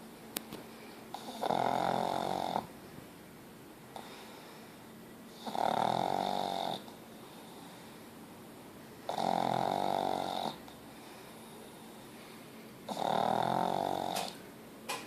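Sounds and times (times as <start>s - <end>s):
dog snoring: 1.1s - 2.7s, 5.3s - 7.8s, 9.1s - 10.7s, 12.9s - 14.4s.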